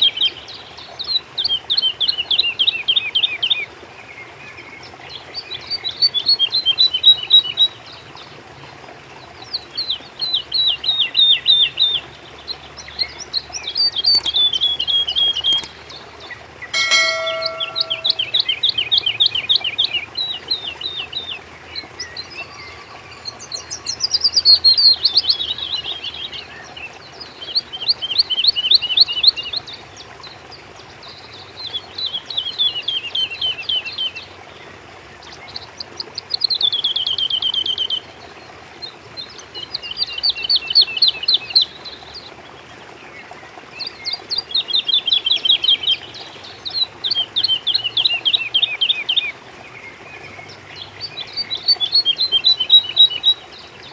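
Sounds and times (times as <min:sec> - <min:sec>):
songbird singing: 0:11.0 - 0:16.0, 0:16.7 - 0:18.6, 0:43.8 - 0:53.9.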